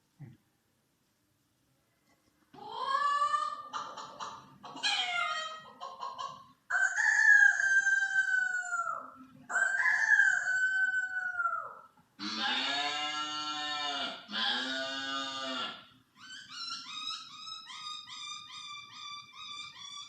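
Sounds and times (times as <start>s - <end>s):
chicken clucking: 2.6s - 7.8s.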